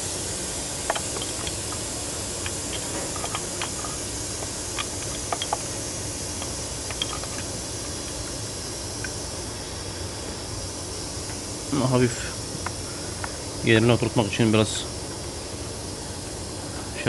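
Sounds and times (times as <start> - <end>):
steady hiss: 0.0 - 17.0
metal parts clicking and tapping: 0.8 - 8.2.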